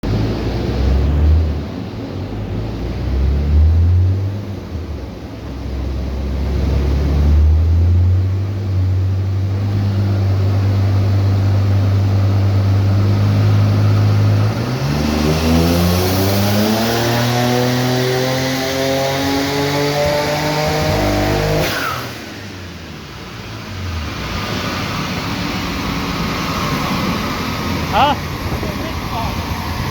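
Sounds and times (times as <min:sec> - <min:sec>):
car engine revving: 0:00.0 - 0:29.9.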